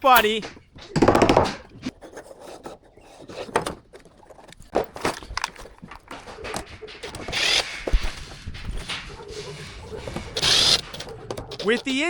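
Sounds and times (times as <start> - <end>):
scraping rasp: 1.9 - 5.1, 5.8 - 12.0.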